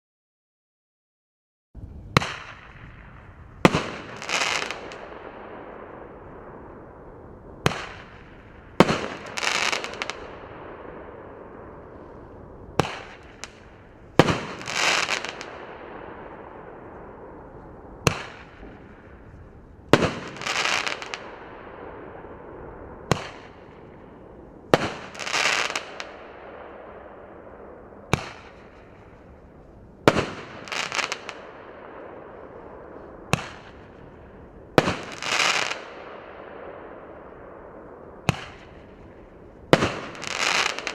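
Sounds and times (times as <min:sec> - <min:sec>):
crackling firework burst: 0:01.8 - 0:40.9
firework shot pops: 0:02.1 - 0:05.0, 0:07.6 - 0:10.2, 0:12.8 - 0:13.6, 0:18.0 - 0:19.2, 0:23.1 - 0:23.8, 0:33.3 - 0:33.8, 0:38.2 - 0:38.9.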